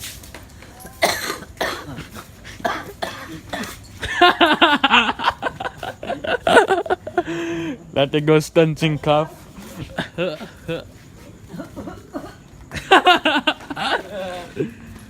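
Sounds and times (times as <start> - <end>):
man fake-coughing: 1.0 - 6.8.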